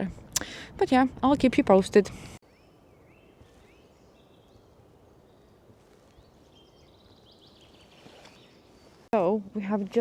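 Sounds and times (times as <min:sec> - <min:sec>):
songbirds chirping and whistling: 0:02.3 - 0:10.0.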